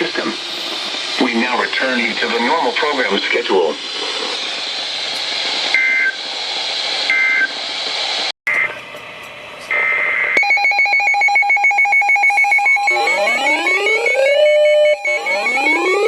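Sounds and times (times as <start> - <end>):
radio static hiss: 0.0 - 8.9, 9.5 - 10.4, 12.9 - 16.0
steady beep: 10.4 - 16.0
two-tone electronic beeps: 10.4 - 16.0
fast pulsed electronic beeping: 11.6 - 16.0.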